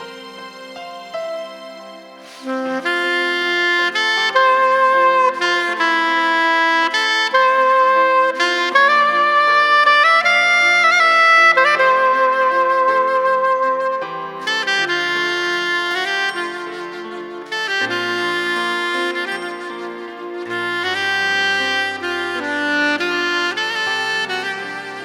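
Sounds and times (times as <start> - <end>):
saxophone slow melody: 0.0 - 25.0
soft accompaniment: 0.0 - 25.0.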